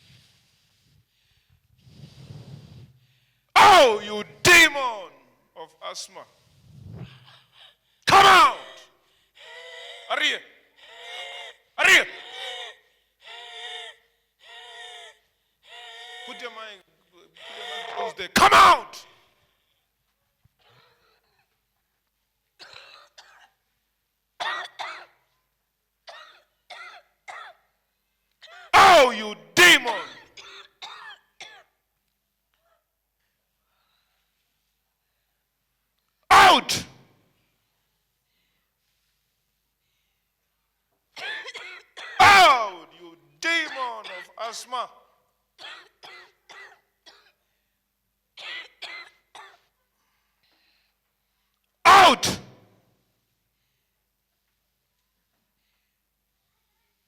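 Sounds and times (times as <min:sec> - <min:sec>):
woman coughing: 0:22.6 - 0:23.6, 0:41.2 - 0:42.2.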